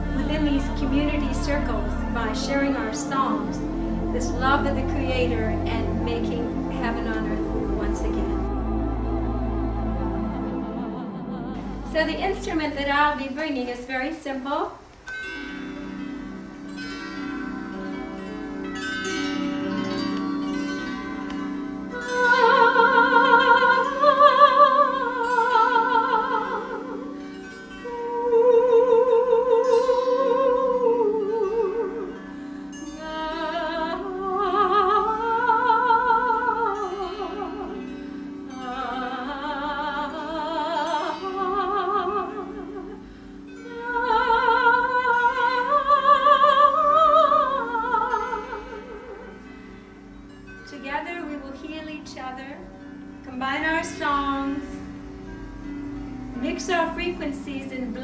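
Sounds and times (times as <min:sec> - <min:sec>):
woman singing operatic: 0:00.0 - 0:14.9, 0:21.9 - 0:49.5, 0:53.3 - 0:54.9, 0:56.4 - 0:58.0
plucked zither: 0:00.0 - 0:58.0.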